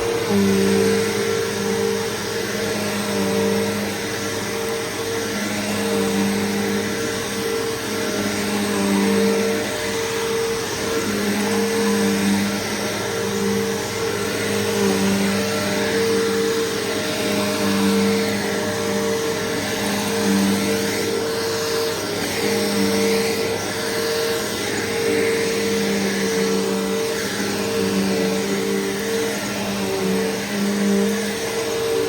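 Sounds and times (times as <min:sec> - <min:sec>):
upright vacuum running: 0:00.0 - 0:32.0.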